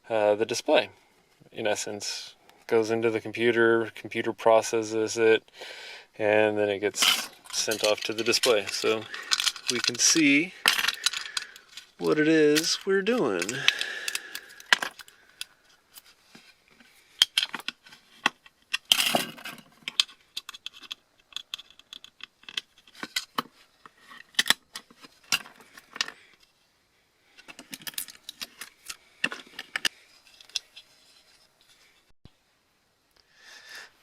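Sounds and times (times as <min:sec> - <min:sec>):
small metal parts clinking: 0:07.0 - 0:16.1, 0:17.1 - 0:26.4, 0:27.4 - 0:31.3.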